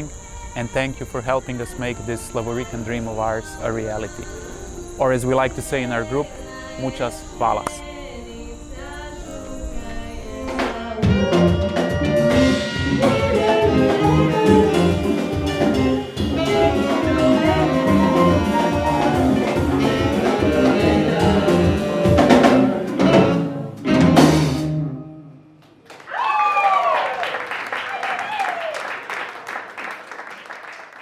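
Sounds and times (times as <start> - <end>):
band music with drums: 10.5 - 24.7.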